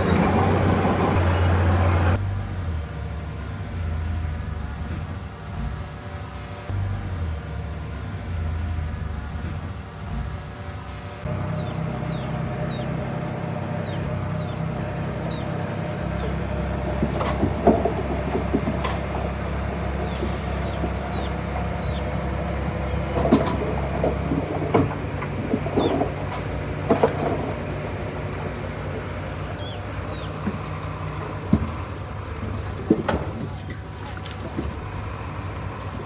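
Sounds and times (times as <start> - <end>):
heavy diesel machinery running: 0.0 - 36.0
metallic knocks and clanks: 16.1 - 20.2, 20.8 - 28.6.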